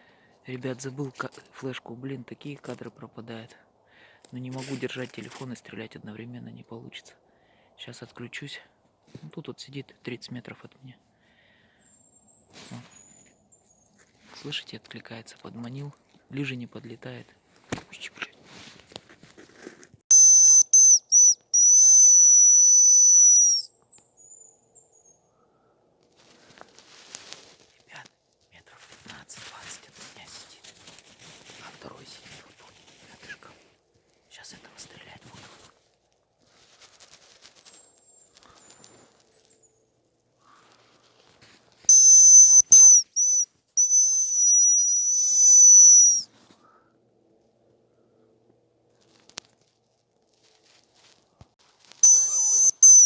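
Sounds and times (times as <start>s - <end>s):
bird call whistle: 20.1s - 23.7s, 41.9s - 46.2s, 52.0s - 53.0s
faint higher whistles: 20.1s - 25.2s, 41.9s - 46.3s, 52.0s - 53.0s.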